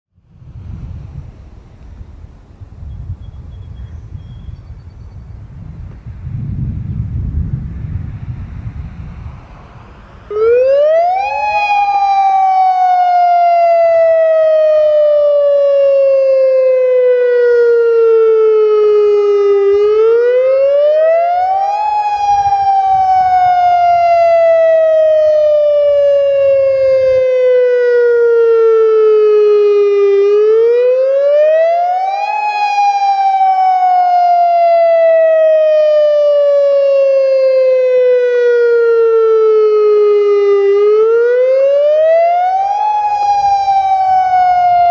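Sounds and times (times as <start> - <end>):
warning siren wailing: 9.4 - 44.9.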